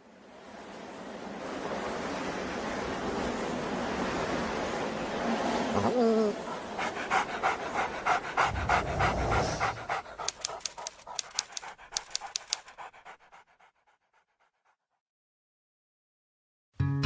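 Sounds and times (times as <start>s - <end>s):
dog panting: 6.4s - 14.8s.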